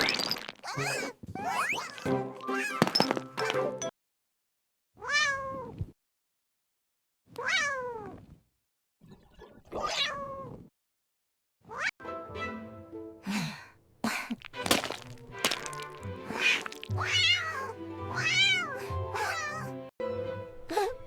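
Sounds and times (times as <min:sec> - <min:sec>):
background music: 0:12.0 - 0:13.4, 0:14.8 - 0:21.0.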